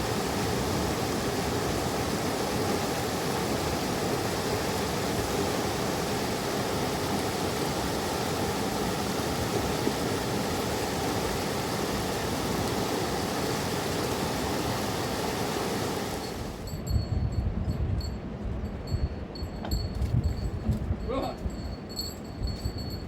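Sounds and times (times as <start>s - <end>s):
river rushing: 0.0s - 16.6s.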